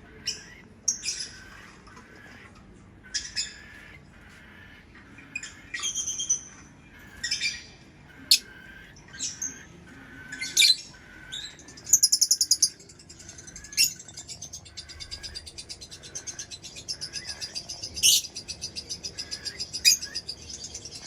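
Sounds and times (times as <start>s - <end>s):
lovebirds chirping and squawking: 0.0s - 21.0s
fast rattling bird trill: 8.2s - 21.0s.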